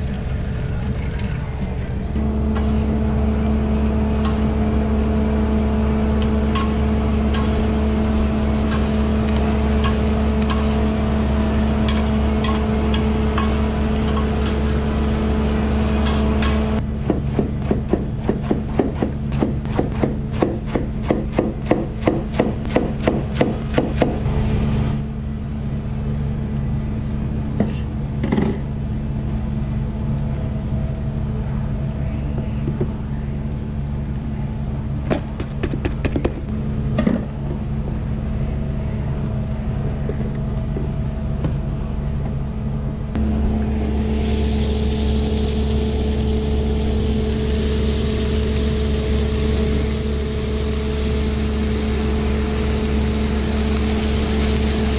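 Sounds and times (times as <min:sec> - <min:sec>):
kitchen equipment hum: 0:02.0 - 0:16.9, 0:37.8 - 0:54.9.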